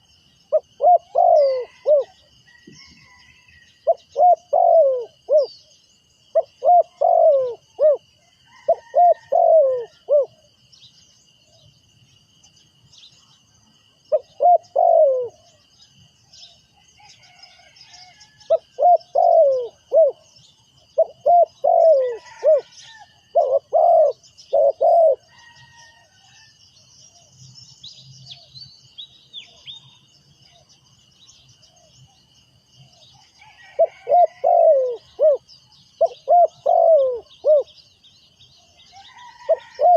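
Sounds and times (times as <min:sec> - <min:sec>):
dove cooing: 0:00.5 - 0:02.2, 0:03.8 - 0:05.6, 0:06.3 - 0:10.5, 0:14.1 - 0:15.6, 0:18.5 - 0:20.3, 0:20.9 - 0:25.8, 0:33.7 - 0:37.7, 0:39.2 - 0:39.9.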